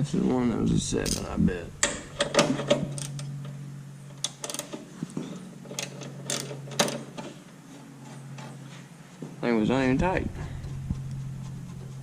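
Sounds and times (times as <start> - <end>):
steady low hum: 0.0 - 12.0
ratchet clicking on a bolt: 4.2 - 4.8, 5.8 - 7.0.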